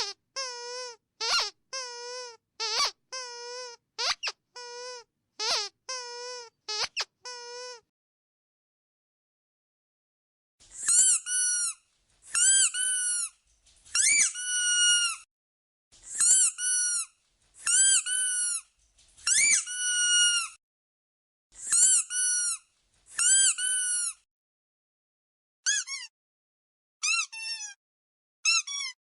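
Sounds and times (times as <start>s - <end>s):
squeaky dog toy squeaking: 0.0s - 7.8s, 10.8s - 11.8s, 12.4s - 13.3s, 14.0s - 15.2s, 16.2s - 18.6s, 19.3s - 20.6s, 21.6s - 22.6s, 23.2s - 24.2s, 25.6s - 26.1s, 27.0s - 27.8s, 28.4s - 29.0s.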